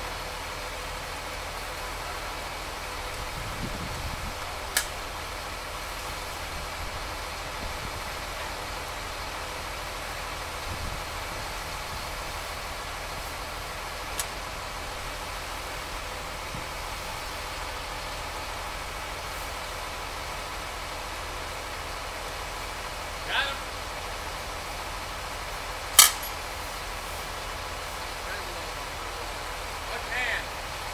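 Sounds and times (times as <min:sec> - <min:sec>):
heavy equipment engine idling: 0:00.0 - 0:30.9
sharp click: 0:04.7 - 0:04.9, 0:26.0 - 0:26.4.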